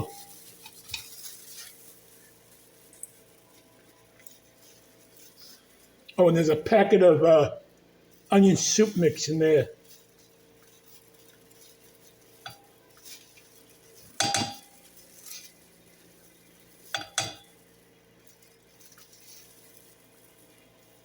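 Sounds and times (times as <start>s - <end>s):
faint steady hum: 0.0s - 21.0s
dishes and utensils clattering: 14.1s - 14.7s, 16.9s - 17.5s.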